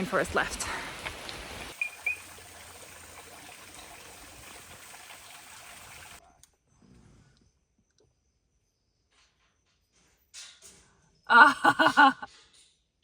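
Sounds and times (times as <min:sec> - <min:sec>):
water trickling: 0:00.0 - 0:06.2.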